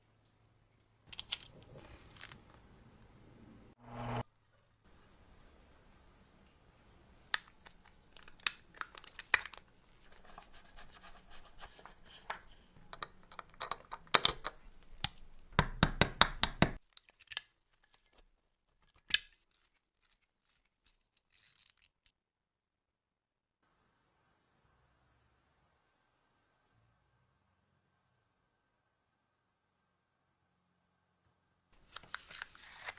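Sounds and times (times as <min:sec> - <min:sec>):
small metal parts clicking: 0:01.1 - 0:01.6.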